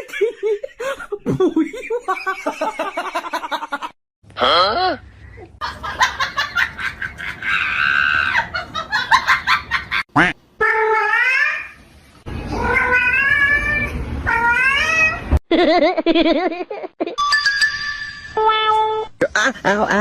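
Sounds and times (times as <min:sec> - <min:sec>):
cat meowing and yowling: 0:12.5 - 0:15.2.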